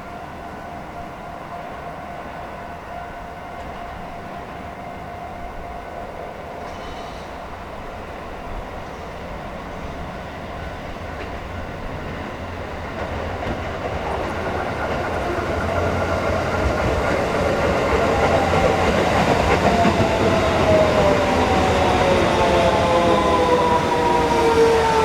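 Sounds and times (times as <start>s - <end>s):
train braking: 6.5s - 25.0s
train wheels on rails: 6.6s - 25.0s.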